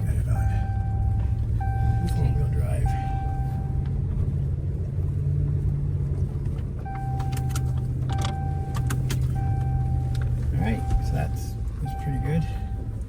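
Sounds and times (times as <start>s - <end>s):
pickup engine droning: 0.0s - 13.0s
sharp clicks: 6.9s - 10.3s.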